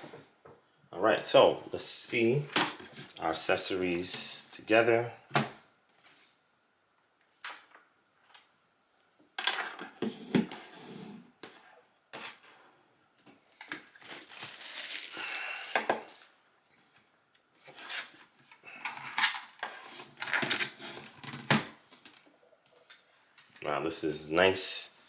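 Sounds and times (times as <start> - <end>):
packaging rustling: 13.7 - 16.4.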